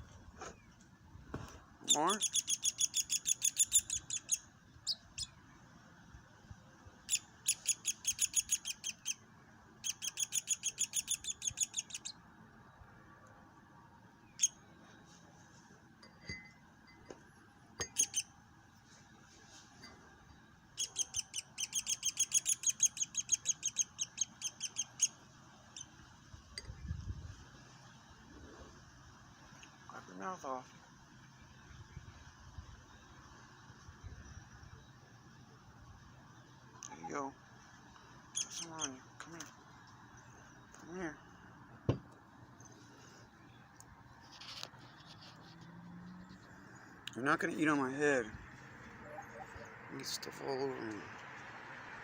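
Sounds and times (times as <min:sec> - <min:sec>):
fledgling woodpecker begging calls: 0:01.8 - 0:05.4, 0:07.1 - 0:09.2, 0:09.8 - 0:12.2, 0:17.9 - 0:18.3, 0:20.8 - 0:26.0, 0:38.2 - 0:39.0.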